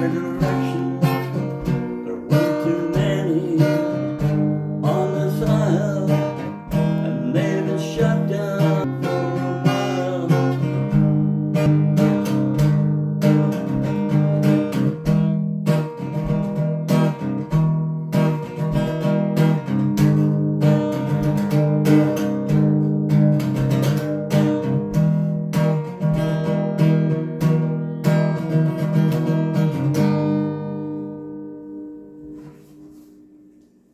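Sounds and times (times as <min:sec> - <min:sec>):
acoustic guitar strumming chords: 0:00.0 - 0:33.9.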